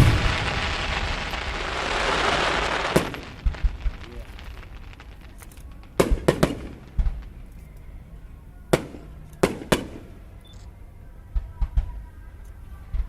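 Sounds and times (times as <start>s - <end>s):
fireworks bursting: 0.0s - 8.0s, 8.7s - 10.4s.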